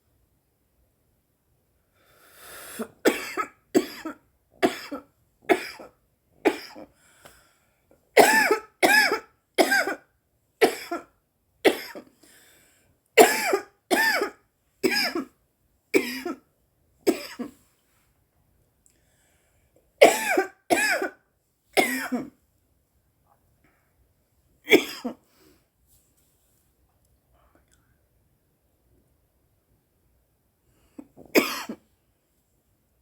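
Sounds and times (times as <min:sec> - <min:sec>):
woman coughing harshly: 0:03.0 - 0:05.9, 0:06.5 - 0:06.9, 0:08.2 - 0:10.0, 0:10.6 - 0:11.1, 0:11.7 - 0:12.1, 0:13.2 - 0:15.3, 0:16.0 - 0:16.4, 0:17.1 - 0:17.5, 0:20.0 - 0:21.2, 0:21.8 - 0:22.3, 0:24.7 - 0:25.2, 0:31.3 - 0:31.8.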